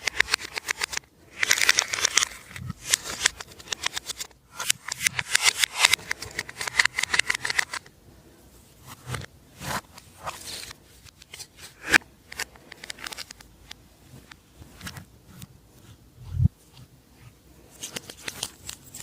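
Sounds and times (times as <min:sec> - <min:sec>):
sticky clicks: 0:00.0 - 0:07.9.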